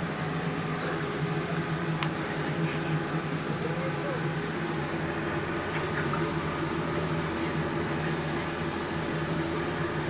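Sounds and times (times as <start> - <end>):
low mechanical hum: 0.0 - 10.0.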